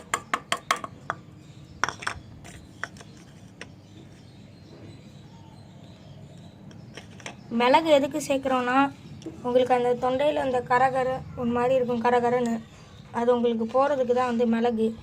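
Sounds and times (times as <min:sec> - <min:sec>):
kitchenware clinking in stone mortar: 0:00.0 - 0:03.8.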